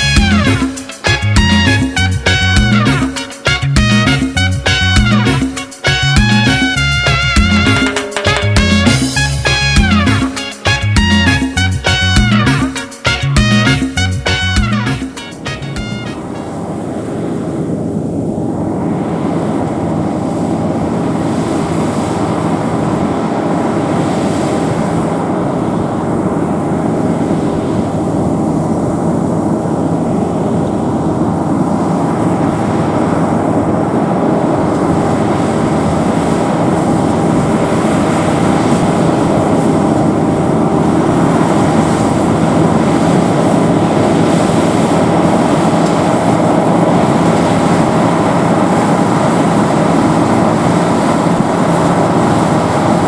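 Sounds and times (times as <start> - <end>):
combine harvester engine drone: 0.0 - 53.0
faint steady whine: 16.0 - 53.0.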